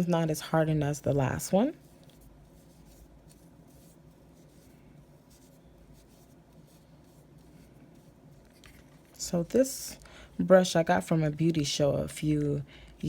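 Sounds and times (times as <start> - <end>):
faint room hum: 0.0 - 13.0
scratchy handling noises: 1.2 - 10.1.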